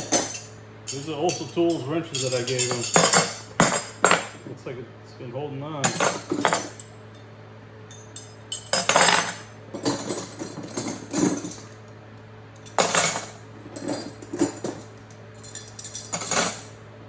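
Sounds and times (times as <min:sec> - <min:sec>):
metal tools clinking: 0:00.0 - 0:04.4, 0:05.8 - 0:06.9, 0:07.9 - 0:11.9, 0:12.6 - 0:16.8.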